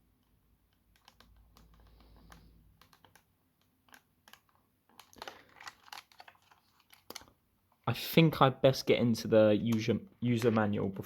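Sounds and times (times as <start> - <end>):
plastic clicks and taps: 0.2 - 7.3, 9.7 - 10.6.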